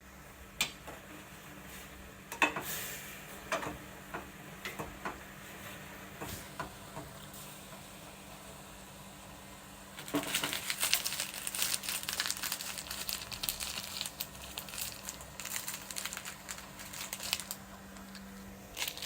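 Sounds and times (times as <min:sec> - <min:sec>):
faint hum: 0:05.8 - 0:19.0.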